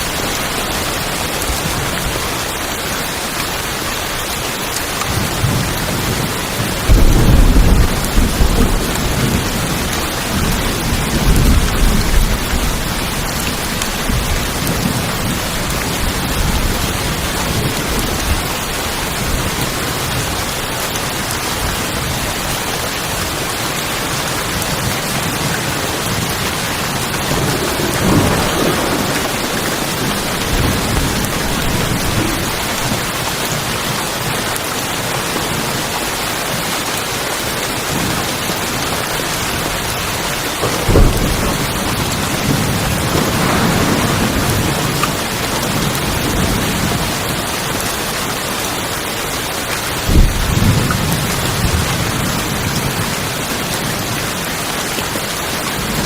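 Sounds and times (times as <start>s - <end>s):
heavy rain on a tin roof: 0.0s - 56.0s
thunder rumbling: 5.1s - 20.8s, 24.6s - 33.7s, 39.2s - 47.8s, 49.9s - 54.5s.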